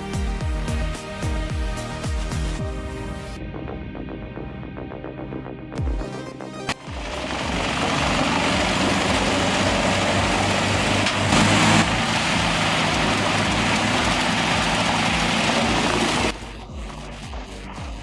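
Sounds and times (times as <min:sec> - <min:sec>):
heavy machine engine running: 0:06.8 - 0:18.0
dense rushing noise: 0:07.0 - 0:16.6.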